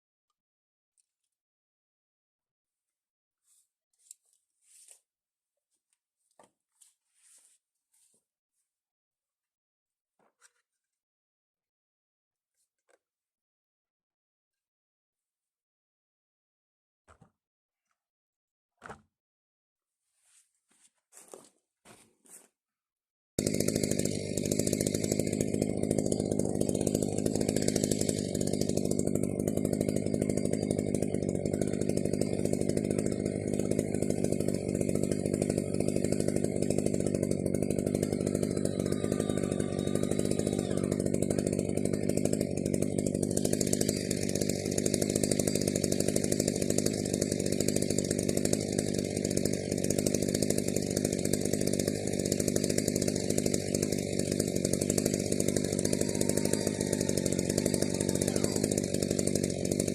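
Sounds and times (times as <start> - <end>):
chainsaw cutting log: 3.5 - 5.1, 18.8 - 19.1, 21.1 - 22.5, 23.4 - 59.9.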